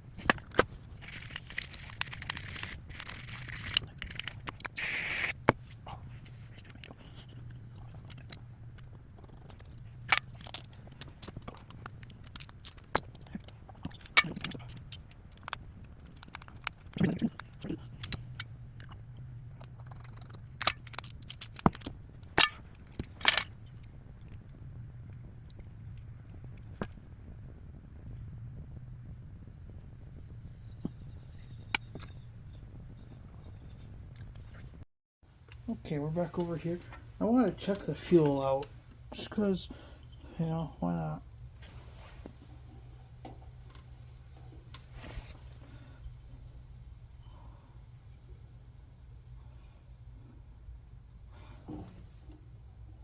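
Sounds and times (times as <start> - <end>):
tools and metal parts clinking: 0.2 - 5.3, 10.0 - 15.5, 20.6 - 24.4.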